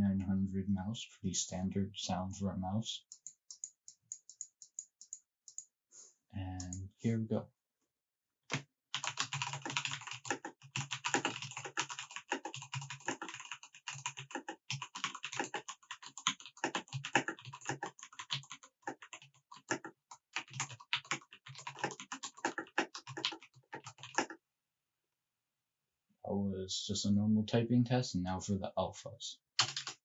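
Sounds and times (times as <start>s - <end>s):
mechanical keyboard typing: 9.0s - 24.4s, 29.6s - 30.0s.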